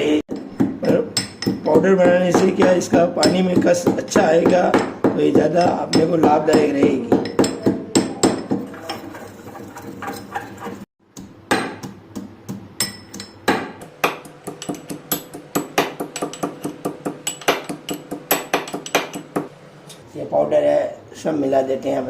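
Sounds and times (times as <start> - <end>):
pestle pounding in a mortar: 0.3 - 19.5.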